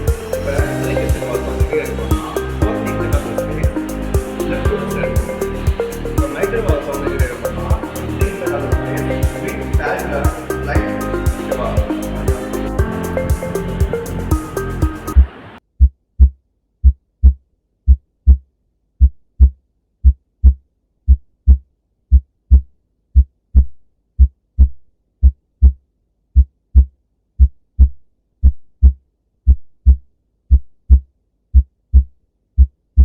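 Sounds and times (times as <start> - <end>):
heartbeat lub-dub: 0.0 - 18.4.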